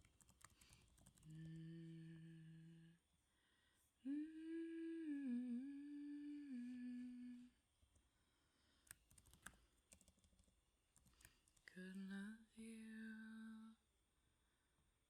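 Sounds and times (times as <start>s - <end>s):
woman humming: 1.2s - 3.0s, 4.0s - 7.6s, 11.7s - 13.8s.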